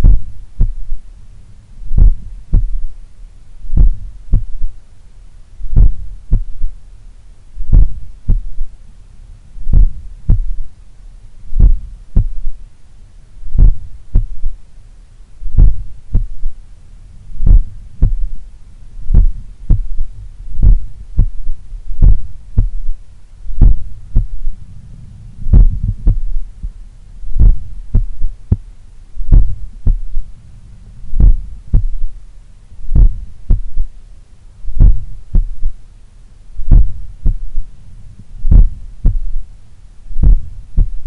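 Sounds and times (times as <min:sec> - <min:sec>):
heartbeat through stethoscope: 0:00.0 - 0:01.0, 0:01.9 - 0:02.9, 0:03.7 - 0:04.8, 0:05.7 - 0:06.8, 0:07.6 - 0:08.7, 0:09.6 - 0:10.7, 0:11.5 - 0:12.6, 0:13.5 - 0:14.6, 0:15.5 - 0:16.6, 0:17.3 - 0:18.4, 0:19.1 - 0:24.6, 0:25.4 - 0:30.3, 0:31.1 - 0:32.1, 0:32.9 - 0:33.9, 0:34.7 - 0:35.8, 0:36.6 - 0:37.7, 0:38.4 - 0:39.4, 0:40.2 - 0:41.0.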